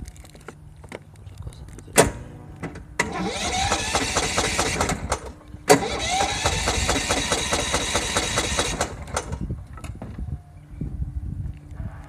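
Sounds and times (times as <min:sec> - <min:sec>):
lawn mower engine cranking: 0:02.0 - 0:09.4.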